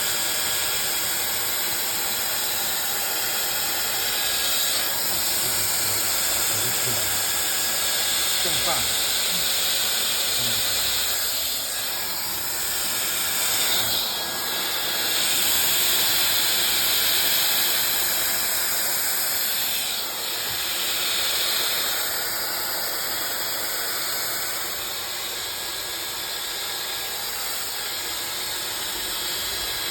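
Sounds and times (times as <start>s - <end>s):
hair dryer blowing air: 0.0s - 29.9s
high motor whine: 1.8s - 21.9s.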